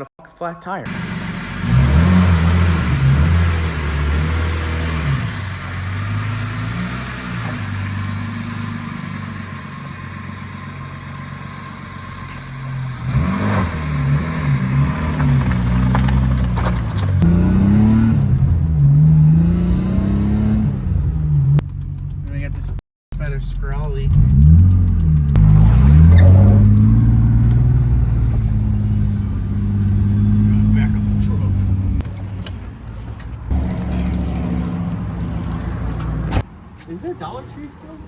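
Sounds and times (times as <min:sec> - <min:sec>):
car engine accelerating: 0:00.9 - 0:32.6, 0:33.3 - 0:36.5.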